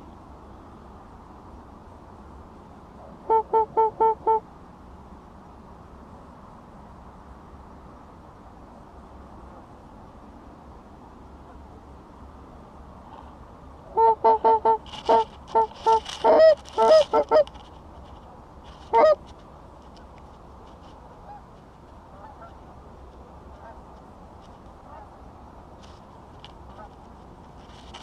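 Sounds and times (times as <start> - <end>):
goose honking: 3.3 - 4.4, 14.0 - 17.6, 18.9 - 19.2.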